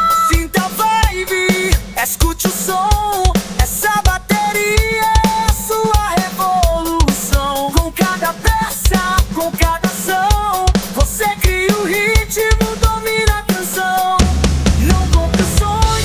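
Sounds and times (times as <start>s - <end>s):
drum kit playing a beat: 0.0s - 16.0s
melodic lead line: 14.2s - 16.0s.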